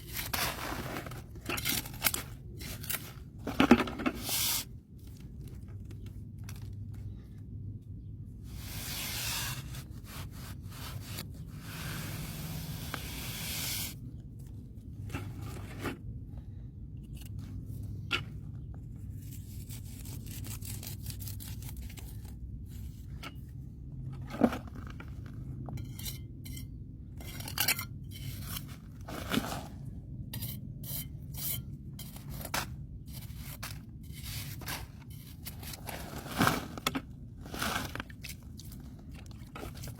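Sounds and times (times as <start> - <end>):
tools scraping and rubbing: 0.0 - 4.7, 8.5 - 14.0, 25.8 - 36.8
low steady hum: 0.0 - 39.9.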